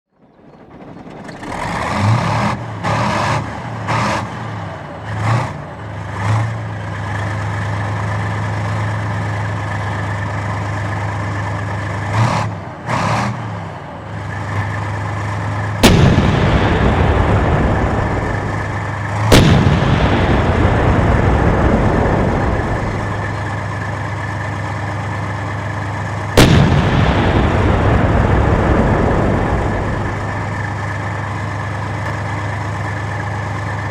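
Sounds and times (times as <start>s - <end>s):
tank engine revving and idling: 0.1s - 33.9s
cannon shots: 15.8s - 23.9s, 26.4s - 31.2s.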